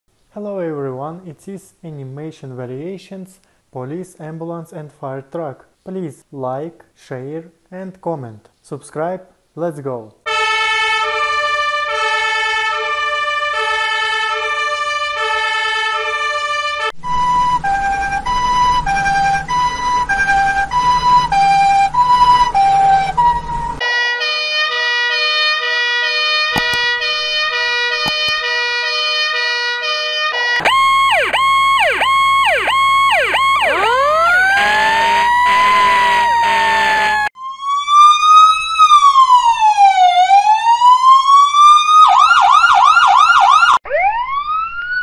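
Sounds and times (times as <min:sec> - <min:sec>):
two-tone emergency sirens: 0:10.3 - 0:45.0
sharp clicks: 0:26.5 - 0:28.4.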